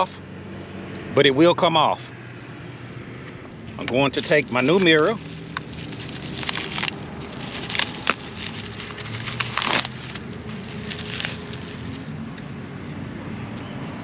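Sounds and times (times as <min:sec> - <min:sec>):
plastic scrape: 0:03.6 - 0:12.1.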